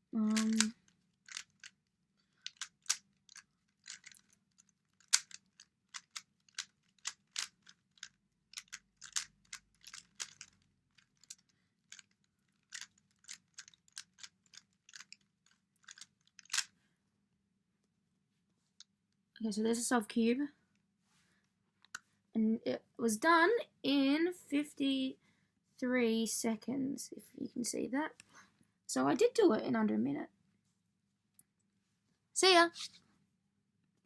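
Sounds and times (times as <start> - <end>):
puzzle cube plastic layers clicking: 0.2 - 16.8.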